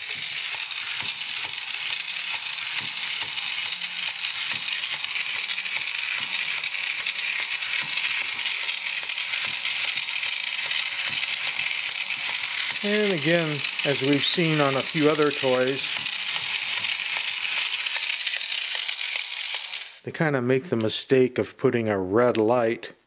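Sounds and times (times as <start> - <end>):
toy robot clicking rattle: 0.0 - 20.0.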